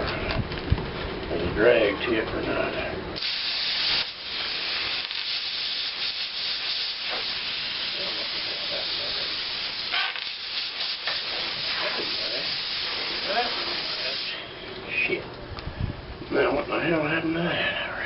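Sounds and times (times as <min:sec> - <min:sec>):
plasma cutter torch hissing: 0:03.2 - 0:14.5.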